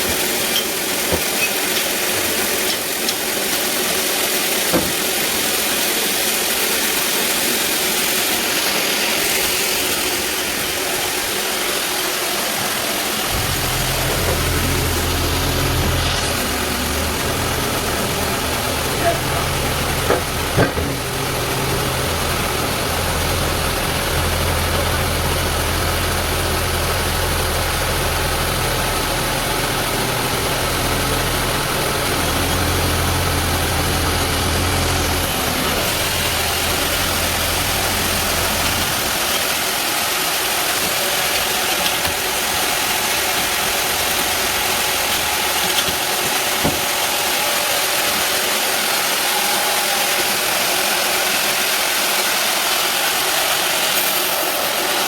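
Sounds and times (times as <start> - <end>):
bandsaw machinery drone: 7.8 - 55.0
deep low hum: 13.3 - 39.0.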